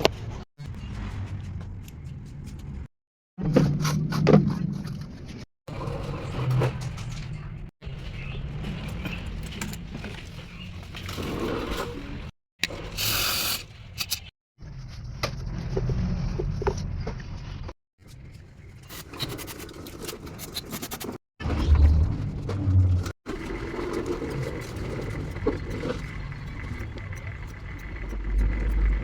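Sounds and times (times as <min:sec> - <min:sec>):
tools scraping and clicking: 0:12.6 - 0:14.3, 0:18.1 - 0:21.2
steady low rumble: 0:24.0 - 0:29.0.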